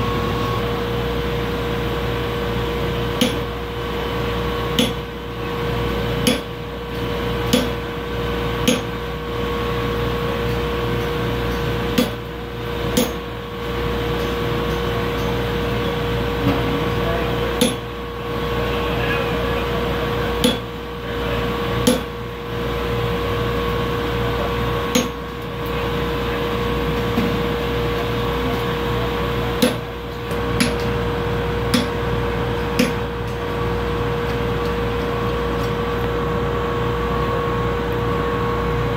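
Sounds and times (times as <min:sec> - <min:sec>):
steady background hum: 0:00.0 - 0:38.9
hammer striking steel anvil: 0:03.2 - 0:03.5, 0:06.2 - 0:06.5, 0:07.4 - 0:07.8, 0:08.6 - 0:08.9, 0:13.0 - 0:13.2, 0:17.6 - 0:17.9, 0:20.4 - 0:20.7, 0:21.8 - 0:22.1, 0:24.9 - 0:25.2, 0:29.6 - 0:29.8, 0:30.6 - 0:30.9, 0:31.7 - 0:32.0, 0:32.8 - 0:33.4.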